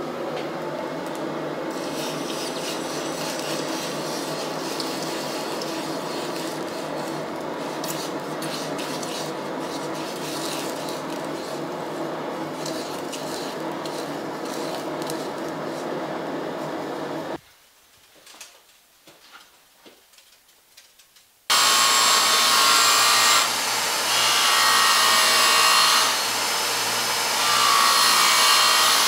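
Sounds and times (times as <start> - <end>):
shop equipment hum: 0.0 - 17.4, 21.5 - 29.0
scraping on steel: 1.7 - 15.9.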